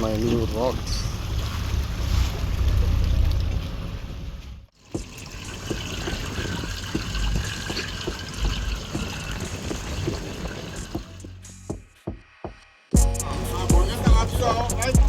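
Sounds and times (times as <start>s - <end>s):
water running and splashing: 0.0s - 11.6s.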